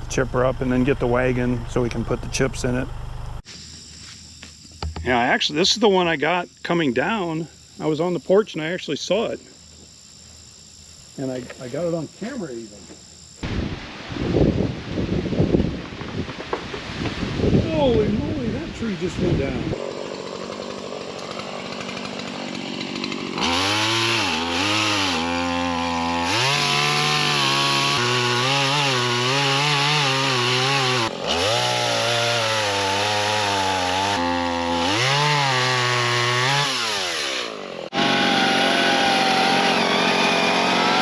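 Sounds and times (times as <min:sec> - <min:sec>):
chainsaw cutting wood: 0:19.7 - 0:41.0.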